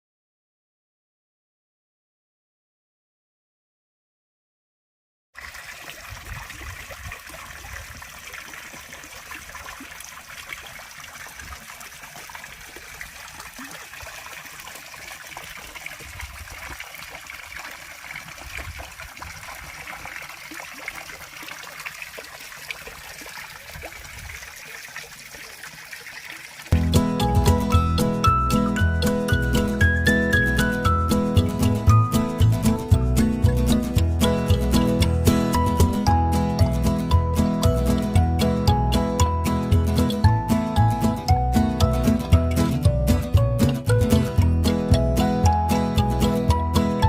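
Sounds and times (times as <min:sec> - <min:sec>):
fountain splashing into a pond: 0:05.4 - 0:27.8.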